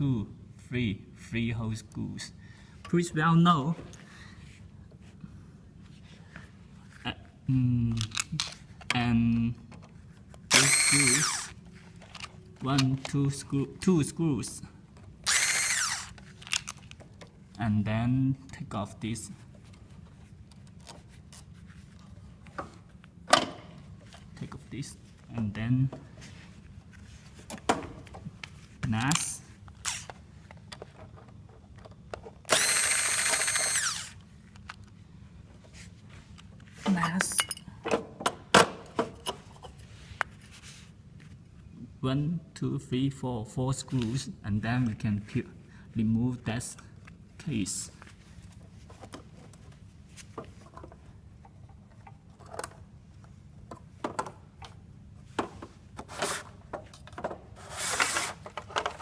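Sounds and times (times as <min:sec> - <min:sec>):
electric screwdriver motor whine: 0:10.5 - 0:11.6, 0:15.2 - 0:16.2, 0:32.5 - 0:34.2
faint clicks of handled parts: 0:16.1 - 0:17.6, 0:28.4 - 0:32.4.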